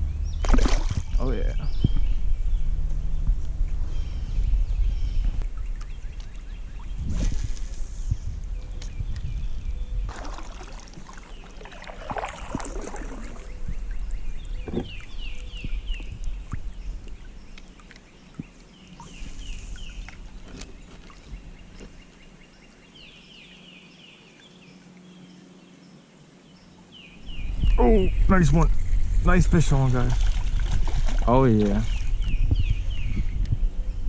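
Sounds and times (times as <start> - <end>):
kayak splashing in water: 0.4 - 1.2, 10.1 - 17.2, 28.8 - 32.2.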